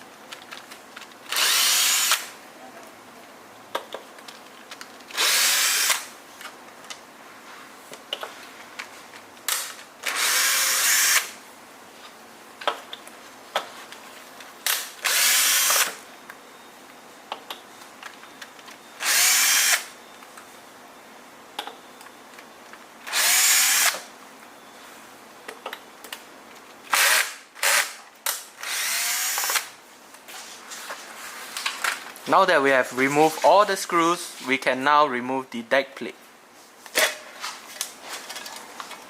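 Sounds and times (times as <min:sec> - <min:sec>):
power drill motor spinning: 0:01.3 - 0:02.3, 0:05.1 - 0:06.1, 0:10.0 - 0:11.3, 0:15.0 - 0:16.0, 0:19.0 - 0:19.9, 0:23.1 - 0:24.0, 0:28.6 - 0:29.7.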